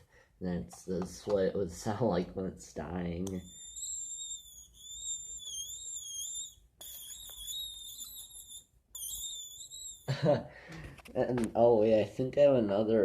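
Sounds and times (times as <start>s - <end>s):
pencil parts rubbing squeak: 3.3s - 10.2s.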